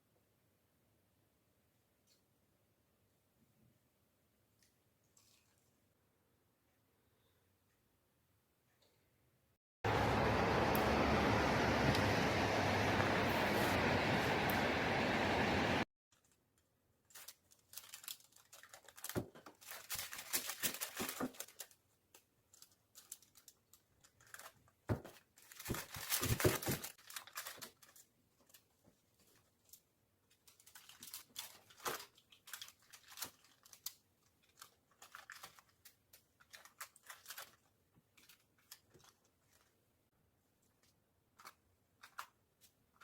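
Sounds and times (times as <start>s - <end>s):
plastic packaging crinkling and tearing: 16.1s - 39.8s.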